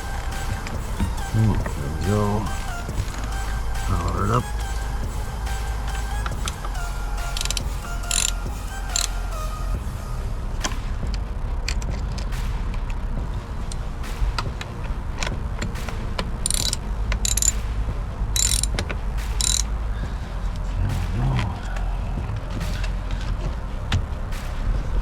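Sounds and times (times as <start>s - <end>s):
steady low rumble: 0.0s - 25.0s
ratchet wrench clicking: 7.4s - 8.3s, 16.5s - 17.6s, 18.4s - 18.7s, 19.4s - 19.6s.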